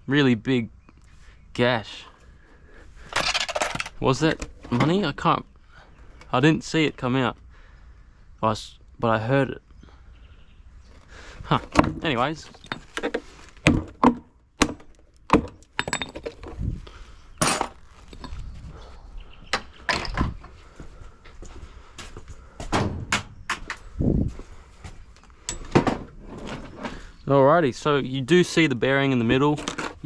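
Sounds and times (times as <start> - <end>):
washing machine parts clattering: 3.0 - 5.0, 15.3 - 16.6.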